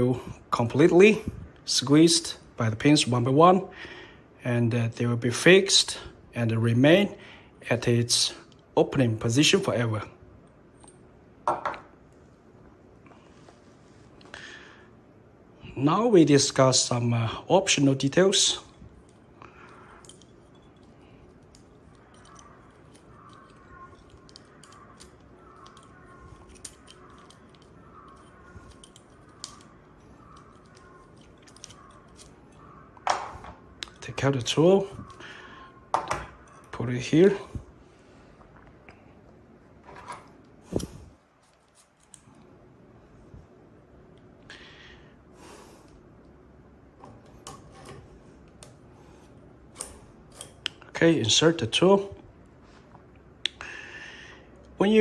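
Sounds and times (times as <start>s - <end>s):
small metallic clicks: 19.0s - 32.7s.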